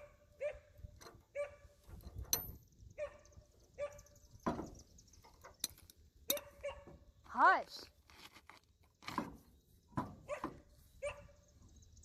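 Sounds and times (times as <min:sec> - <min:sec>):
dog yelping: 0:00.0 - 0:00.7, 0:01.3 - 0:01.7, 0:06.3 - 0:06.9, 0:10.3 - 0:11.3.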